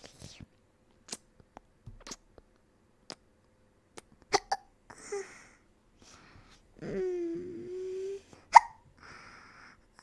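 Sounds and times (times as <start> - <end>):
breathy sound: 4.9 - 9.8
woman hiccuping: 8.5 - 8.8.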